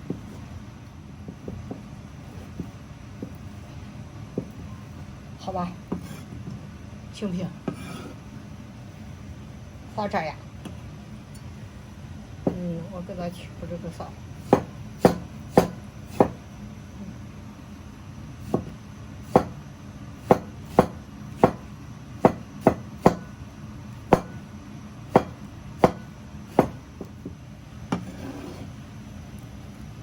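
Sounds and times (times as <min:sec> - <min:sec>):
knife chopping on cutting board: 0:14.4 - 0:16.4, 0:18.4 - 0:19.6, 0:20.2 - 0:23.3, 0:24.1 - 0:24.4, 0:25.1 - 0:26.8.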